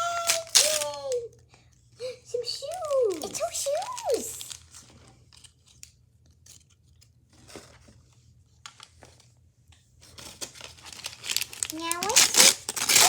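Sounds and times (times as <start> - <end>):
plastic bags crinkling: 0.0 - 1.2, 2.4 - 4.9, 10.2 - 13.0
plastic toy pieces clicking: 0.2 - 1.2.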